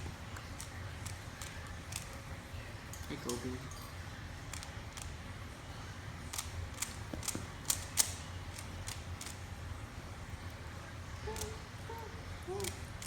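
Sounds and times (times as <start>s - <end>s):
plastic cube clicking as turned: 6.4s - 9.4s.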